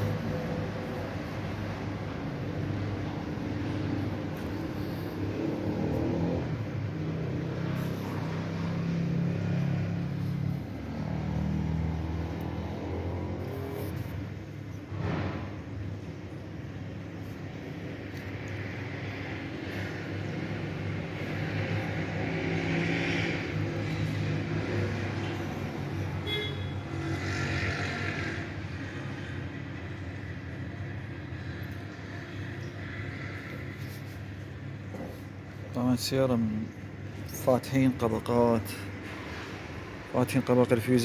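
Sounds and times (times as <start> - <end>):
engine running: 0.0 - 26.8
low mechanical drone: 0.0 - 36.1
passing traffic: 0.0 - 41.0.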